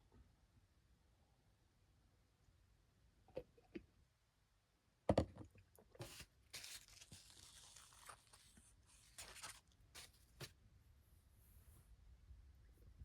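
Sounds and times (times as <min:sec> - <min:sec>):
rustling scraping noise: 0:06.0 - 0:10.5.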